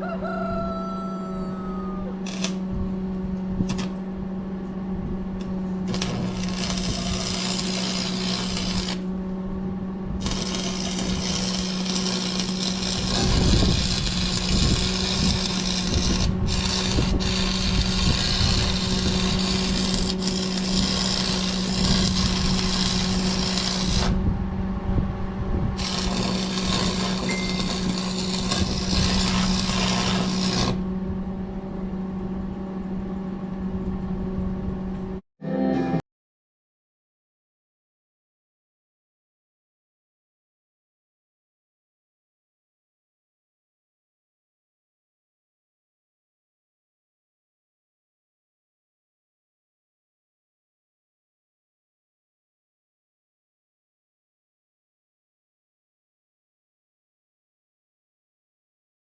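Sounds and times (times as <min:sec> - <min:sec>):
welding arc crackling and sizzling: 0:02.2 - 0:02.6, 0:03.7 - 0:04.0, 0:05.4 - 0:09.1, 0:10.2 - 0:24.2, 0:25.8 - 0:30.8
welding machine hum: 0:02.2 - 0:04.2, 0:05.3 - 0:24.2, 0:25.8 - 0:31.3.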